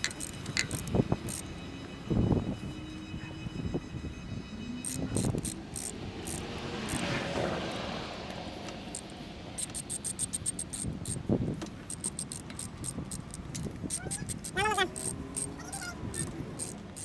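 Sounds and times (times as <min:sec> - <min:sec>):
metallic clicks from hand tools: 0:00.0 - 0:01.4, 0:04.8 - 0:07.1, 0:08.9 - 0:11.2, 0:11.8 - 0:17.0
passing vehicle whoosh: 0:00.2 - 0:14.1.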